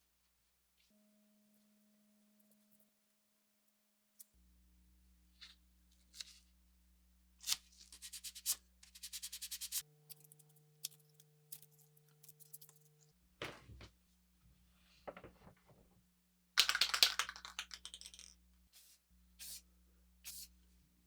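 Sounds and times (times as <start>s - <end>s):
scattered ticks and scrapes: 7.7s - 13.1s.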